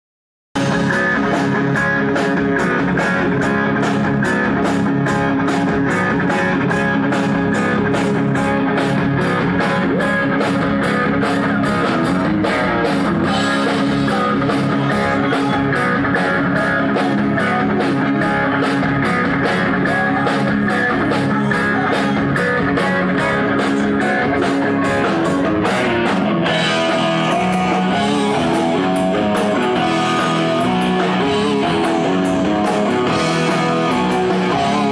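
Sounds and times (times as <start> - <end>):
drum kit beat: 0.6 - 34.9
electric guitar: 0.6 - 34.9.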